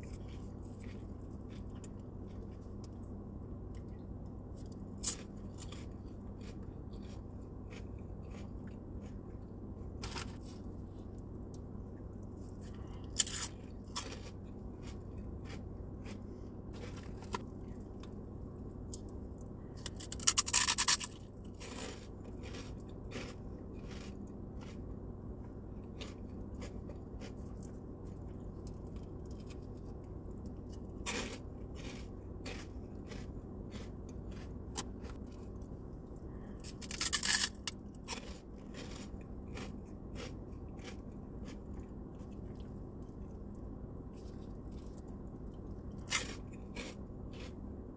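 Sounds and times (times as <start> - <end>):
crunchy food chewing: 0.0 - 47.8
steady low hum: 0.0 - 47.9
sharp crunch: 19.8 - 24.8, 36.6 - 41.6.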